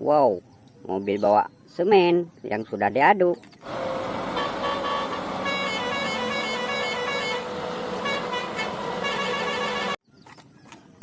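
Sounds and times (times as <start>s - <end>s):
musical vehicle horn tune: 3.7s - 10.0s.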